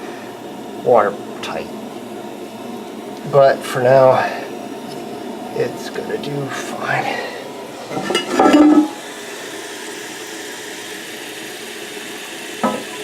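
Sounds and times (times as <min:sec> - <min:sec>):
toilet water rushing: 0:04.0 - 0:13.0
tank refilling with water: 0:05.0 - 0:13.0.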